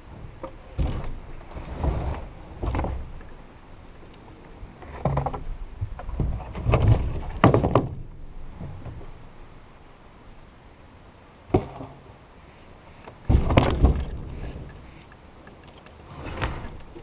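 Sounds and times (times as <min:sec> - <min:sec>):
heavy log scraping and knocking: 0:00.4 - 0:03.4, 0:04.8 - 0:09.1, 0:13.1 - 0:15.0, 0:15.7 - 0:17.0.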